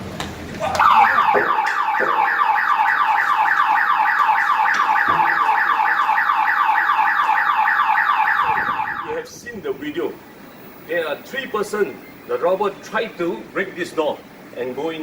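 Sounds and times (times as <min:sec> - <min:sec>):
electronic alarm siren whooping: 0:00.8 - 0:09.4.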